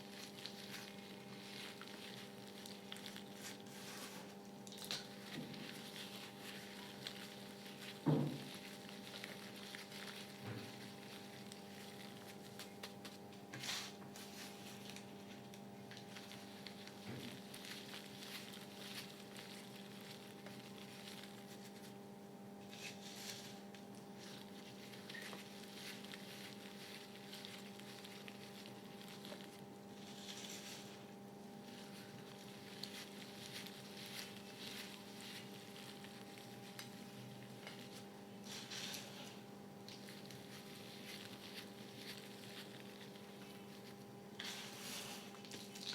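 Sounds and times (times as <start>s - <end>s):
chalk crackling in water: 44.4s - 45.9s.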